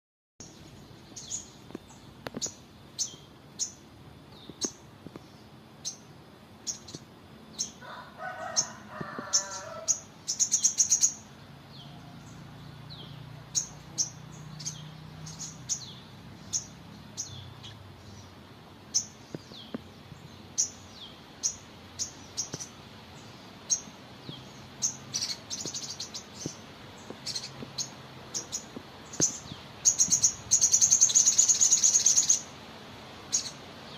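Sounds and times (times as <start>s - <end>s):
bird chirping: 0.4s - 32.5s, 33.2s - 33.9s
bird buzzy trills: 5.8s - 32.6s.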